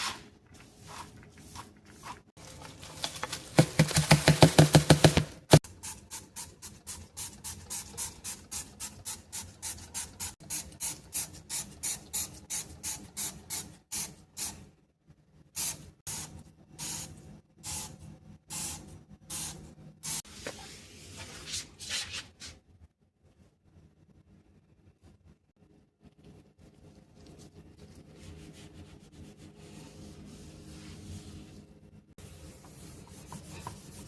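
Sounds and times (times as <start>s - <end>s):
hand scrubbing a surface: 26.6s - 34.0s.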